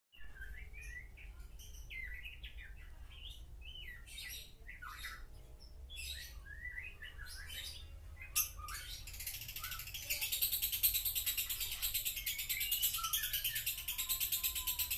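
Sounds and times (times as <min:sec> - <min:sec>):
lovebird chirps and whistles: 0:00.2 - 0:01.1, 0:06.0 - 0:14.9.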